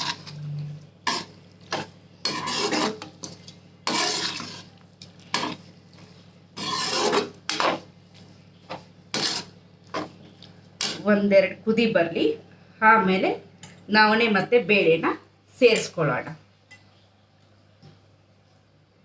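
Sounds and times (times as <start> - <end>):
spoon scraping a cooking pot: 0.0 - 0.4, 1.0 - 7.9, 8.6 - 10.2, 10.8 - 11.0.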